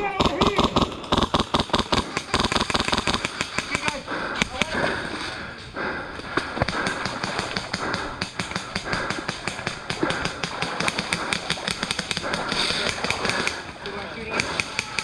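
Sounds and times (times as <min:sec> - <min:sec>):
airsoft guns firing: 0:00.0 - 0:04.8, 0:06.4 - 0:15.0.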